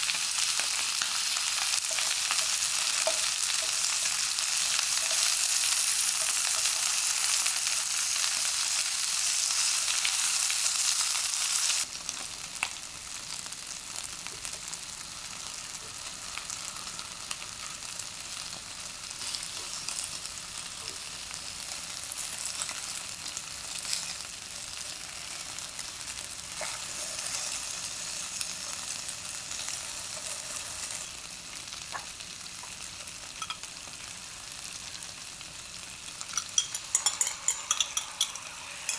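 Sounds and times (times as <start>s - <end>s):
food sizzling in a frying pan: 0.0s - 38.9s
utensil clicking against pan: 36.3s - 38.9s.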